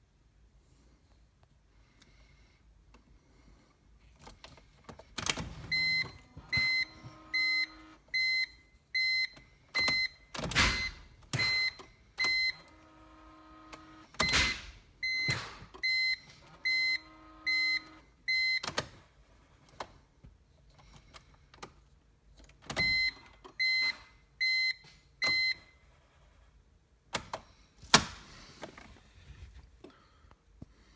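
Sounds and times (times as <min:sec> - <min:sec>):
car warning beeps: 0:05.5 - 0:12.8, 0:14.2 - 0:18.7, 0:22.8 - 0:25.8.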